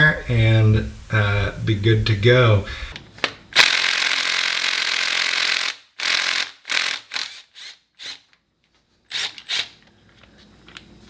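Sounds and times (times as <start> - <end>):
cordless impact driver running: 3.6 - 8.3.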